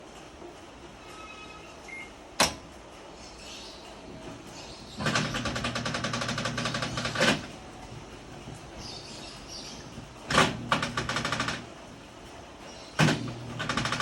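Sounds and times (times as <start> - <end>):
washing machine clicking rattle: 2.3 - 2.8, 4.3 - 8.9, 9.8 - 12.0, 12.9 - 14.0.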